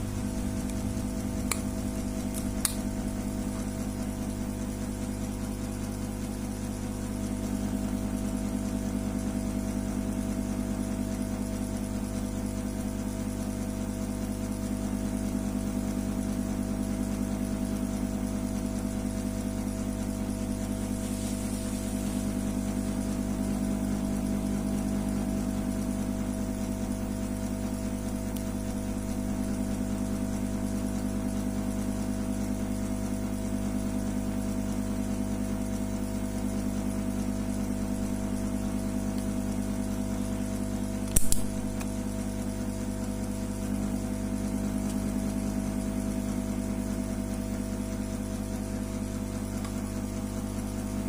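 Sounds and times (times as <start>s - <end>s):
steady low hum: 0.0s - 51.0s
sharp clicks: 41.1s - 41.9s.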